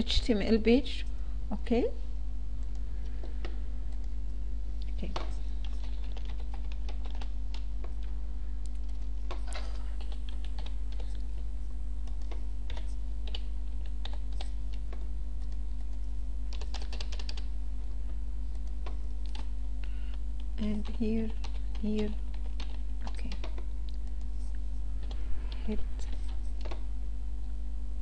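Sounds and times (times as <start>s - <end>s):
low electrical hum: 0.0s - 28.0s
keyboard typing: 5.0s - 17.5s, 18.5s - 26.8s.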